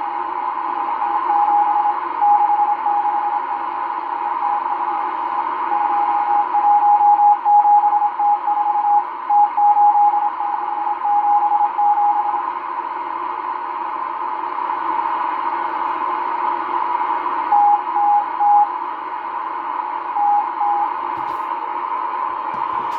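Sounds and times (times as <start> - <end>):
radio band hiss: 22.3 - 22.9.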